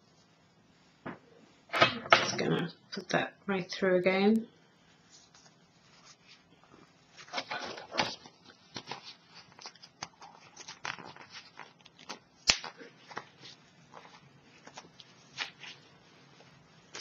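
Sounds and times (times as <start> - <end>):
fabric rustling and scraping: 4.7 - 12.0, 12.8 - 17.0.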